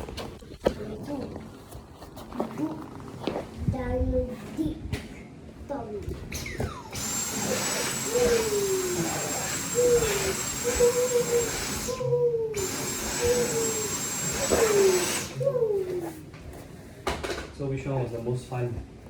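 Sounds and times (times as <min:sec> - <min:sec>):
vacuum cleaner running: 0:06.4 - 0:16.2.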